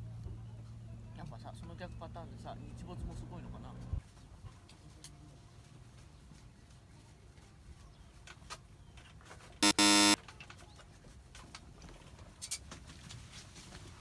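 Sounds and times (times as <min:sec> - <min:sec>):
loud buzzing beep: 0:09.6 - 0:10.2.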